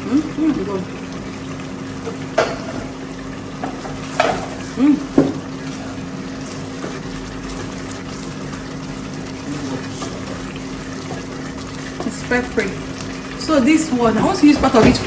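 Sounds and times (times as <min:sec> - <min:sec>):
stew sizzling in a pot: 0:00.0 - 0:15.0
utensil knocks: 0:14.2 - 0:15.0.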